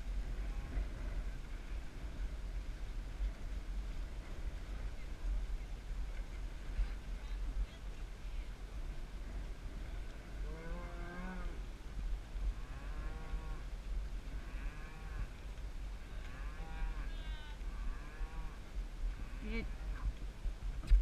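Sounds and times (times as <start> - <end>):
steady low rumble: 0.0 - 21.0
cattle mooing: 10.4 - 11.6, 12.6 - 13.7, 14.4 - 15.3, 16.1 - 18.6.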